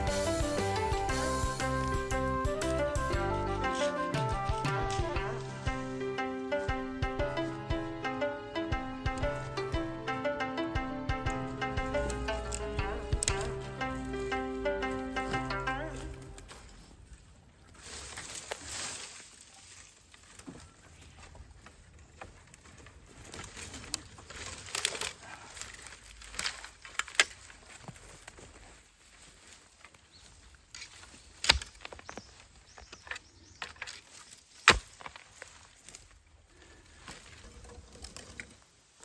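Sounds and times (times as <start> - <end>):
rustling and crackling leaves: 11.3 - 39.0.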